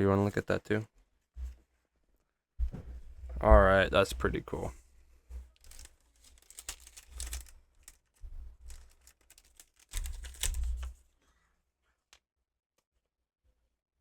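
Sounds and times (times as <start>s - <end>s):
trading cards clicking and sliding: 8.7s - 11.0s.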